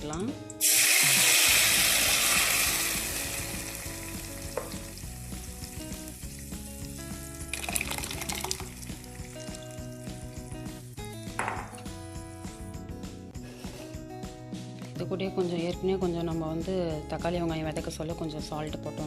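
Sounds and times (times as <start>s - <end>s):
paste sizzling in hot oil: 0.6s - 11.0s.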